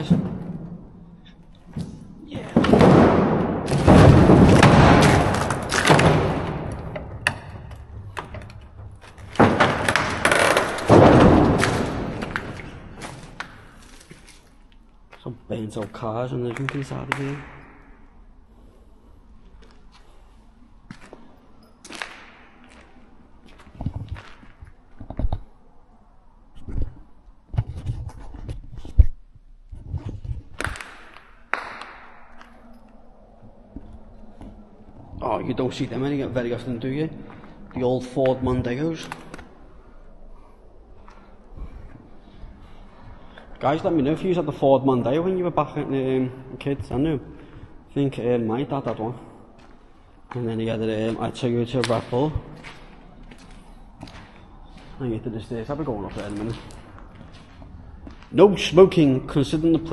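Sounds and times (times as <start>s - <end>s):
heavy bangs echoing: 0.0s - 8.4s, 9.2s - 13.8s, 30.9s - 32.8s
footsteps crunching over debris: 10.9s - 17.3s, 19.5s - 25.1s, 49.5s - 58.4s.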